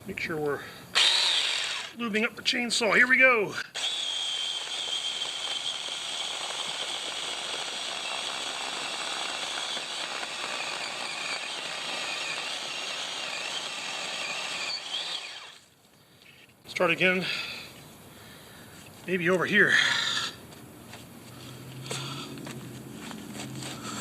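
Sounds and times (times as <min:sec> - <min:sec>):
chainsaw cutting wood: 0:01.0 - 0:02.0, 0:03.7 - 0:15.7, 0:21.4 - 0:24.0.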